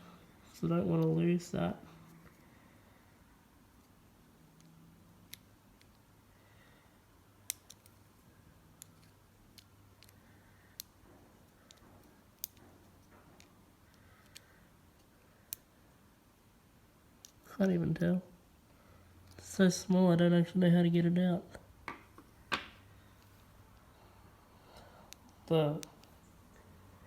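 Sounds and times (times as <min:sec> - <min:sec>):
small sharp metal clicks: 0:07.4 - 0:08.0, 0:08.7 - 0:15.7.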